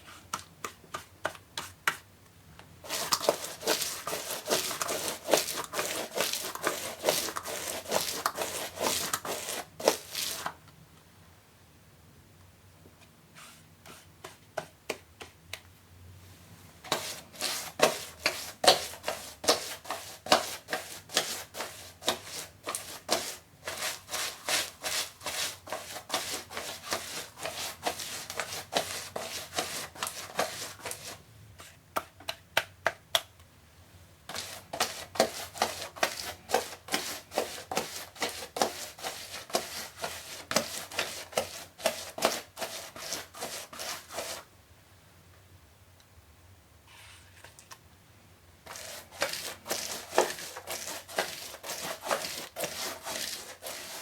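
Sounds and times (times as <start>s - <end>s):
rapid rubbing strokes on a surface: 2.8s - 10.5s, 16.9s - 31.8s, 34.3s - 44.5s, 48.7s - 54.0s.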